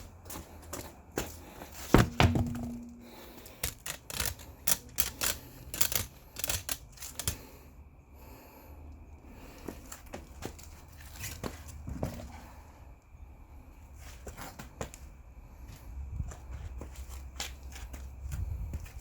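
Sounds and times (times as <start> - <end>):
loud knock with ringing tone: 2.0 - 3.1.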